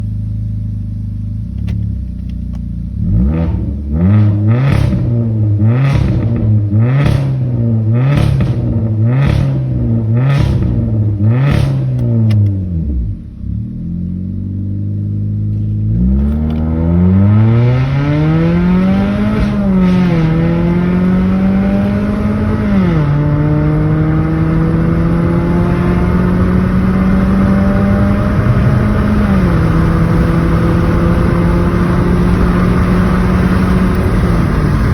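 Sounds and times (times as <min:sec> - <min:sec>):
exhaust popping and crackling: 0:00.0 - 0:13.5, 0:14.9 - 0:34.9
car engine revving: 0:00.0 - 0:34.9.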